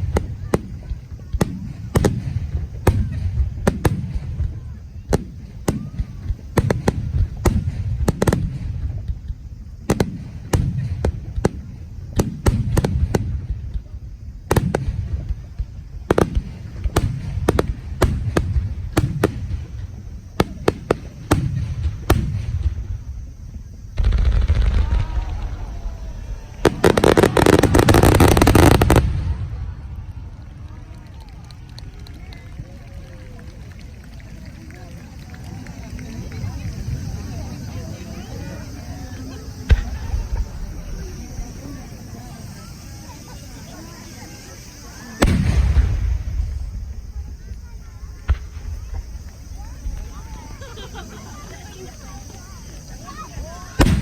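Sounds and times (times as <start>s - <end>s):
fireworks bursting: 0.0s - 54.0s
fireworks crackle: 0.0s - 54.0s.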